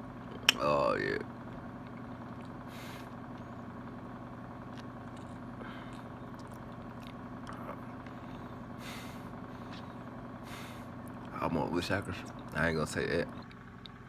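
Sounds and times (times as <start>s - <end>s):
low mechanical hum: 0.0s - 14.0s
breathy hiss: 2.6s - 3.2s, 8.2s - 11.0s.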